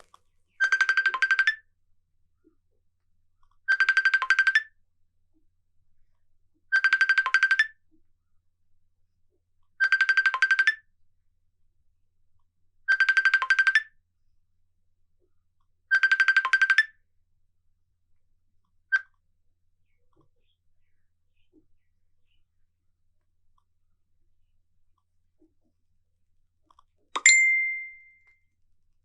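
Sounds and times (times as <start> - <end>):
trilling ringing chime: 27.2 - 28.2.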